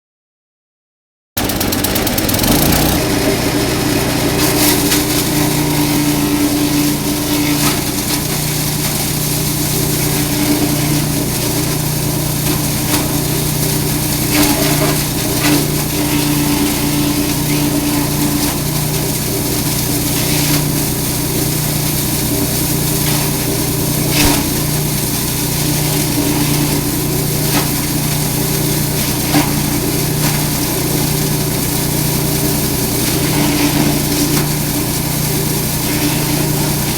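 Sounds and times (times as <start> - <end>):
knocks in chopper blades: 1.4 - 3.5
grass chopper machine humming: 1.4 - 36.9.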